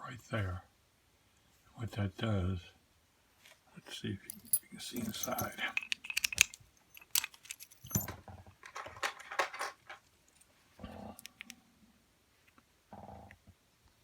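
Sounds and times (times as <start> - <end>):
padlock clicking and jingling: 4.3 - 8.2.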